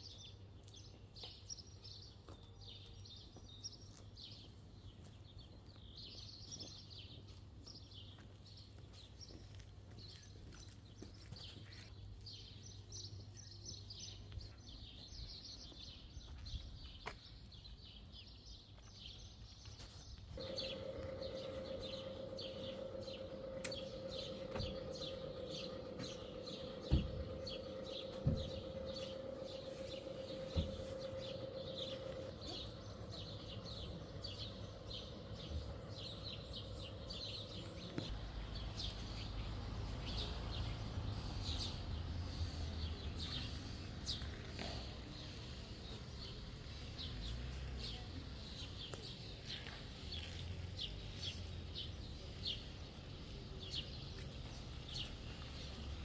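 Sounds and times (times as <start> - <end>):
songbirds chirping and trilling: 0.0 - 56.0
steady hum: 20.4 - 38.2.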